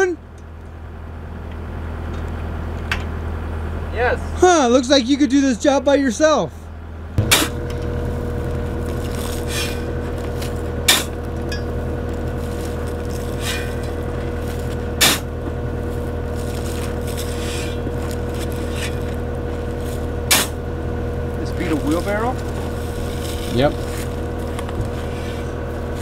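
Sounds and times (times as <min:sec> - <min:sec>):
skid steer engine running: 0:06.8 - 0:26.0
sharp metal clank: 0:07.2 - 0:07.6, 0:20.3 - 0:20.6.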